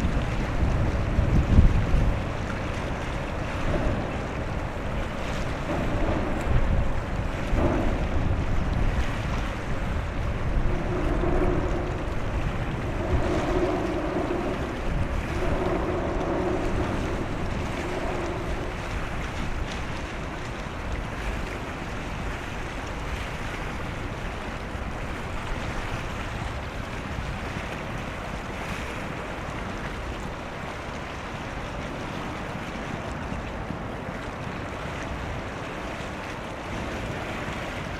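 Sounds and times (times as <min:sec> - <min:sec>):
low hum: 0:00.0 - 0:21.6
water washing: 0:00.0 - 0:37.9
wind buffeting microphone: 0:00.0 - 0:37.9.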